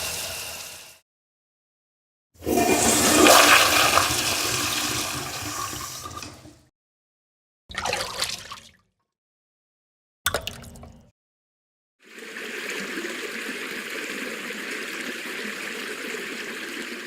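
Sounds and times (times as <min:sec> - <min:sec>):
toilet flushing: 0:00.0 - 0:01.0, 0:02.4 - 0:06.7, 0:12.1 - 0:17.0.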